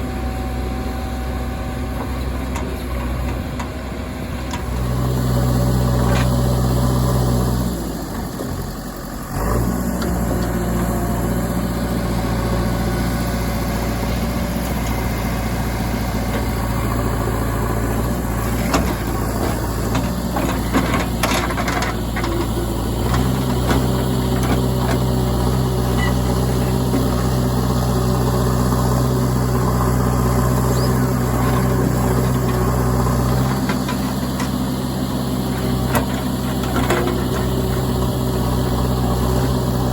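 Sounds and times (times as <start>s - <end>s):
diesel engines running: 0.0s - 39.9s.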